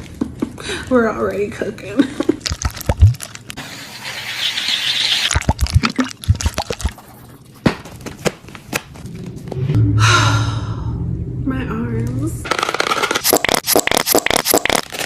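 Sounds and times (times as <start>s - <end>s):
slime squelch: 4.9s - 7.5s, 13.2s - 15.0s.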